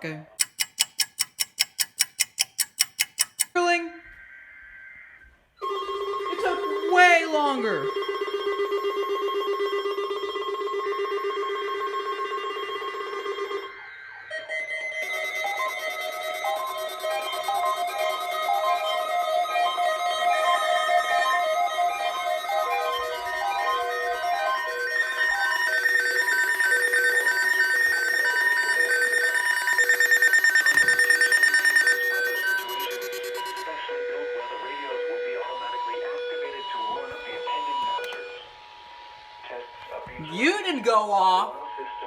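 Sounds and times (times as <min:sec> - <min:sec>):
tune with changing notes: 0:00.3 - 0:37.4
fast pulsing beep: 0:00.4 - 0:04.5, 0:11.4 - 0:33.9
warbling alarm trill: 0:00.4 - 0:37.8.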